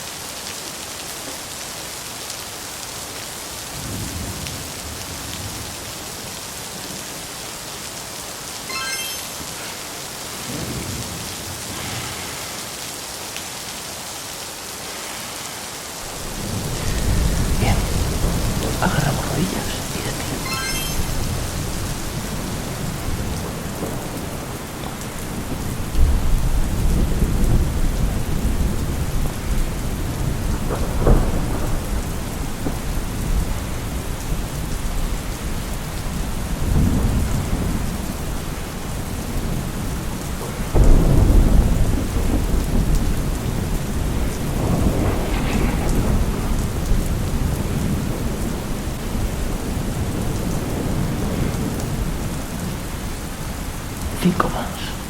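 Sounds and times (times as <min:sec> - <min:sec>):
steady rain: 0:00.0 - 0:55.0
rolls of thunder: 0:22.3 - 0:33.7, 0:40.6 - 0:52.4.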